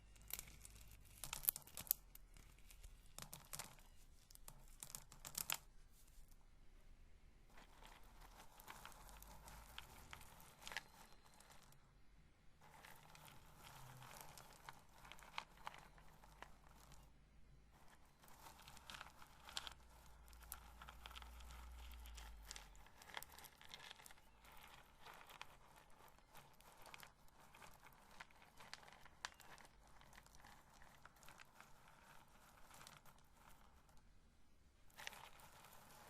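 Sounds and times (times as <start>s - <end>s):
corn kernels rubbed crackling: 7.5s - 11.7s, 12.6s - 17.1s, 17.8s - 34.0s, 34.9s - 36.0s.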